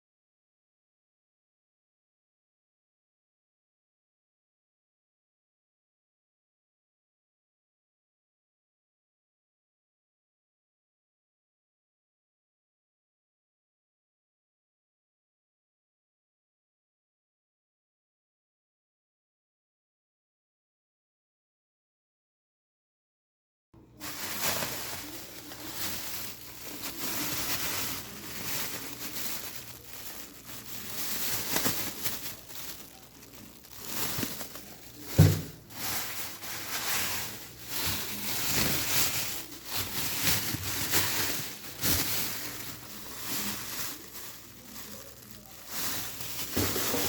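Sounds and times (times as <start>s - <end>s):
rustling and crinkling: 23.9s - 47.0s.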